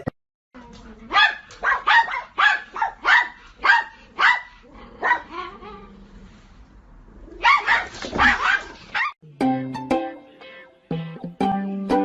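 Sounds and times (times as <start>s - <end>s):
dog barking: 1.1s - 5.5s, 7.4s - 9.2s.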